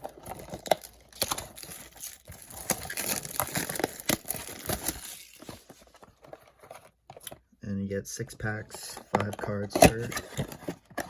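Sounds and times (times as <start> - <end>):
plastic wrapping crinkling and tearing: 0.0 - 6.2.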